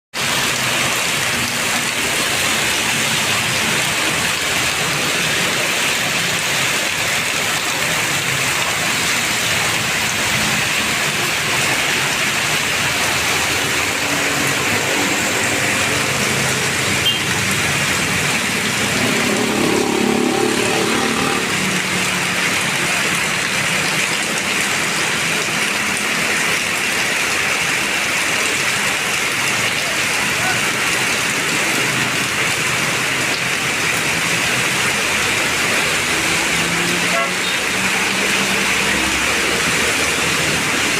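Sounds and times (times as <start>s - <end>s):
heavy rain falling: 0.1s - 40.9s
passing vehicle engine: 12.7s - 23.1s.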